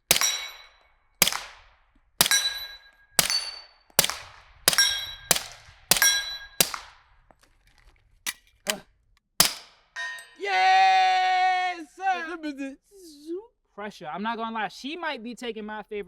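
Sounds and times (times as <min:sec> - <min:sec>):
steel target clanging: 0:00.0 - 0:01.4, 0:02.2 - 0:04.1, 0:04.7 - 0:06.8, 0:09.4 - 0:10.4
suppressed pistol shots: 0:00.0 - 0:07.1, 0:09.4 - 0:09.8.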